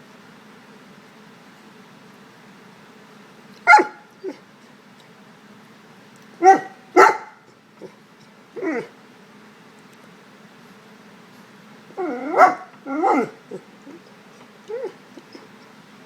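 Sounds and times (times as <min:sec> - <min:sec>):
dog barking and yipping: 0:03.6 - 0:04.4, 0:06.4 - 0:07.9, 0:08.6 - 0:08.9, 0:12.0 - 0:14.1.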